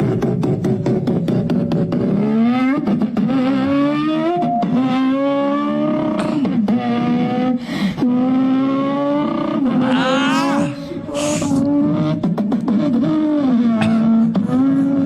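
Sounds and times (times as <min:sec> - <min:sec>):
boy imitating car engine: 0:03.2 - 0:08.7, 0:09.3 - 0:15.0.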